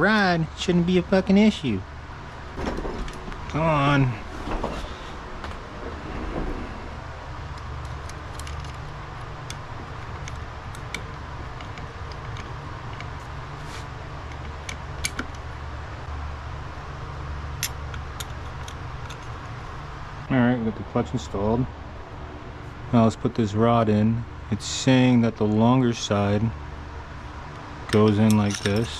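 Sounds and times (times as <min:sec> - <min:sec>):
steady low hum: 0:00.0 - 0:28.9
metallic clicks of clutch plates: 0:14.2 - 0:15.5, 0:27.5 - 0:28.9.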